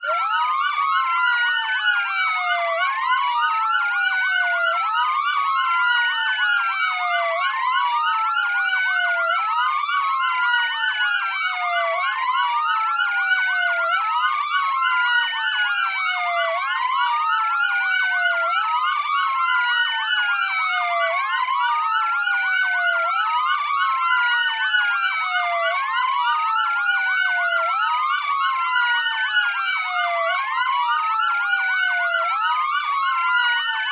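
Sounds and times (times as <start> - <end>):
fast sweeping sirens: 0.0 - 33.9
slow wailing siren: 0.0 - 33.9.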